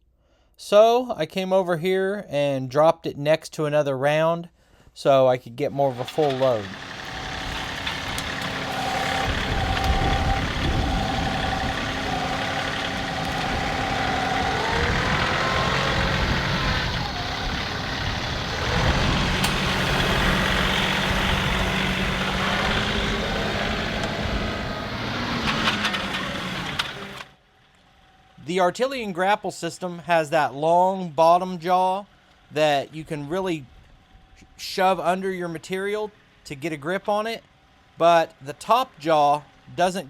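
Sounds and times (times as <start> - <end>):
tractor diesel engine running: 5.8 - 28.4
high whine: 7.0 - 27.2.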